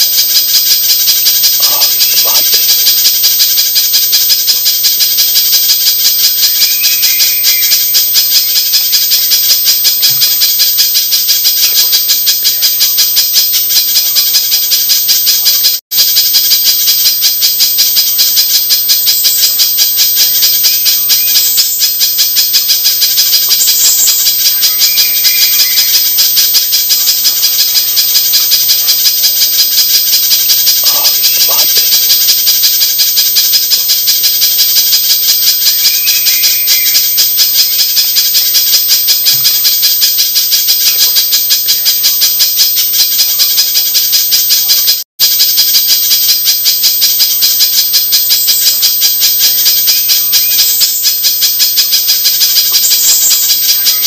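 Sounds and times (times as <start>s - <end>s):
bird sharp high chips: 0.0s - 2.9s, 6.4s - 8.6s, 23.1s - 32.2s, 35.6s - 37.8s, 52.2s - 54.0s.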